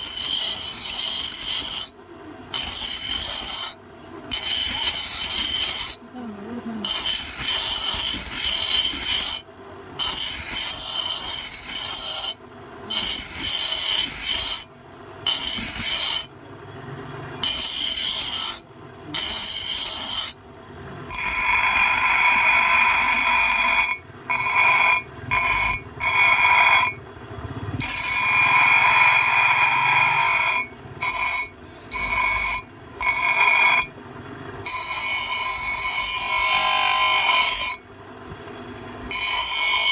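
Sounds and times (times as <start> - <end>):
tool ringing on metal axe head: 2.6 - 6.1, 6.8 - 14.7, 15.3 - 16.3, 17.4 - 20.4, 21.1 - 27.0, 27.8 - 33.9, 34.7 - 38.0, 39.1 - 39.9.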